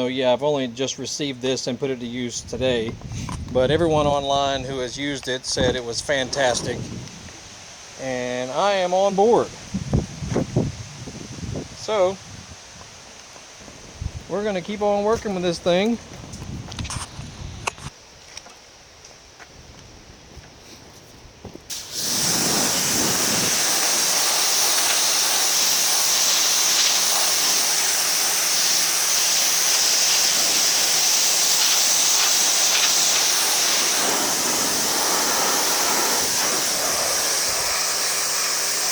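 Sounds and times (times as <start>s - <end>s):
pressure washer motor hum: 21.7s - 38.9s
pressure washer water jet hissing: 21.7s - 38.9s.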